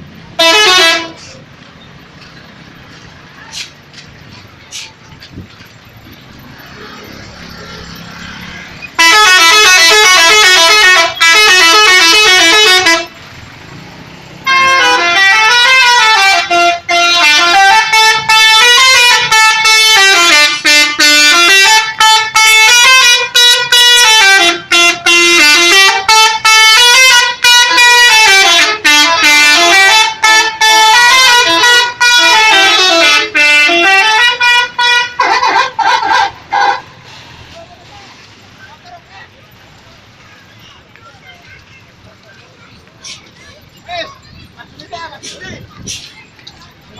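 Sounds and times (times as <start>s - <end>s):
bus horn playing a tune: 0.3s - 1.5s, 6.7s - 13.4s, 14.4s - 37.1s.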